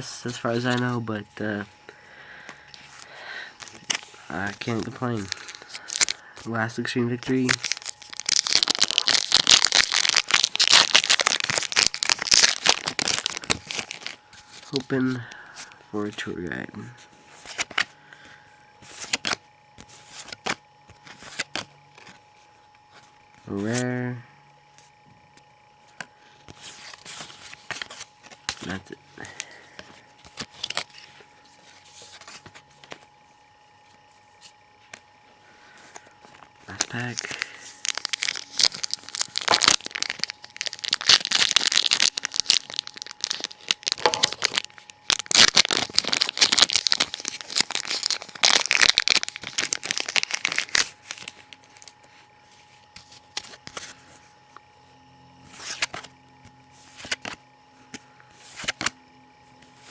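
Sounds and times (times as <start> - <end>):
trading cards clicking and rustling: 2.4 - 23.8, 24.8 - 33.1, 35.8 - 52.1, 52.9 - 54.2, 55.5 - 56.1, 56.8 - 59.0
foil wrapper crinkling and tearing: 3.0 - 6.3, 7.1 - 15.0, 30.2 - 31.2, 36.0 - 52.0.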